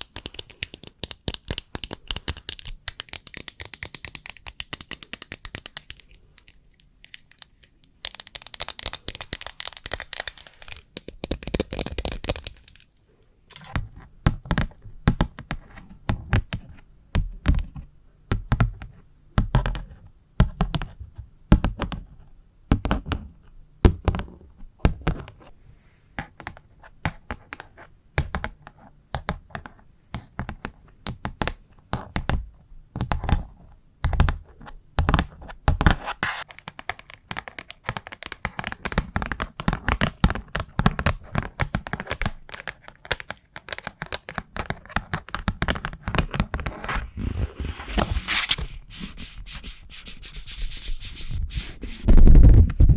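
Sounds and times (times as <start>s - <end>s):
scratchy rustling: 46.7s - 52.1s.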